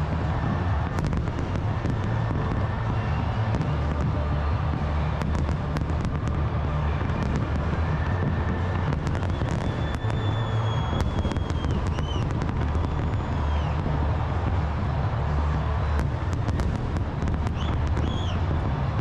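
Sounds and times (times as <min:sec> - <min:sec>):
fireworks crackles and pops: 0:00.0 - 0:19.0
firework whistles: 0:00.1 - 0:19.0.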